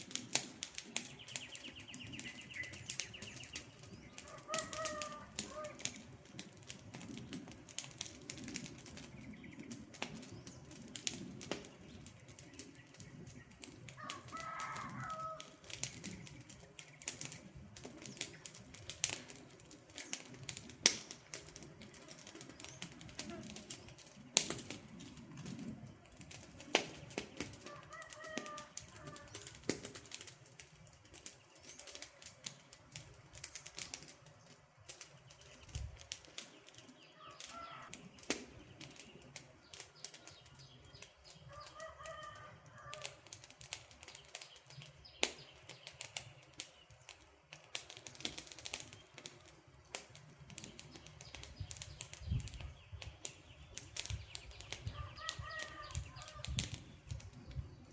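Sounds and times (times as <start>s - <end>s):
campfire crackling and popping: 0.0s - 57.9s
bird calling: 1.2s - 6.0s, 37.0s - 38.0s, 54.3s - 56.6s.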